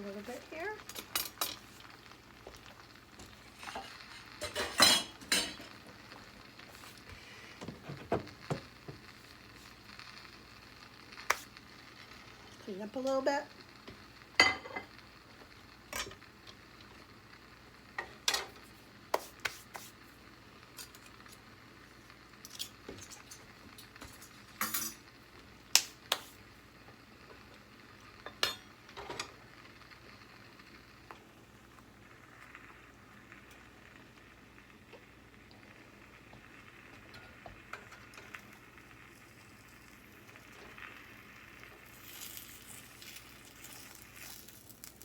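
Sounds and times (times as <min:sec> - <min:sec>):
utensils and dishes clinking: 0:03.7 - 0:05.7.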